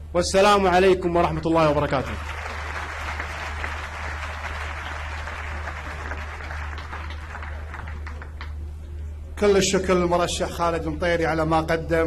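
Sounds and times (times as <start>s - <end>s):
low steady hum: 0.0s - 12.0s
audience clapping: 1.8s - 8.7s.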